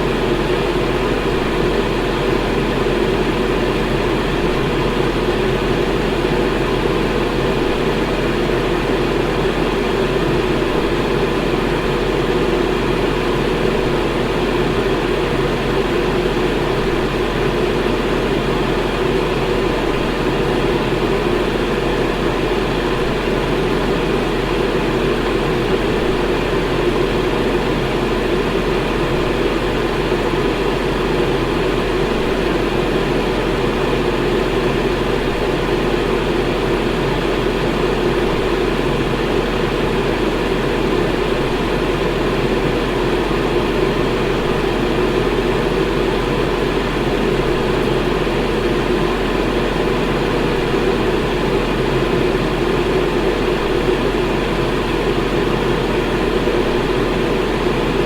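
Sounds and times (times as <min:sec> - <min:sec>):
electric fan running: 0:00.0 - 0:58.0.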